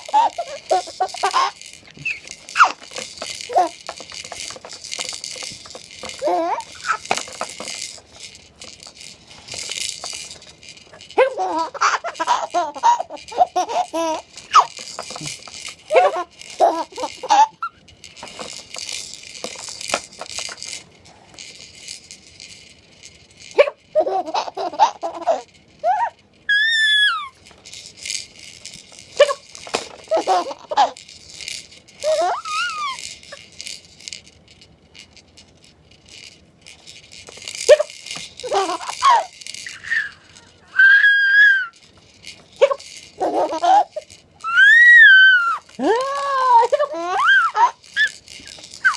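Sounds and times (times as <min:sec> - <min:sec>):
baby laughing: 0:00.0 - 0:02.8, 0:11.2 - 0:14.7, 0:43.2 - 0:44.6
rattling: 0:00.0 - 0:48.9
baby squealing: 0:06.2 - 0:07.1, 0:25.9 - 0:27.4, 0:32.1 - 0:33.0, 0:38.9 - 0:41.8, 0:44.4 - 0:45.7, 0:46.5 - 0:48.2.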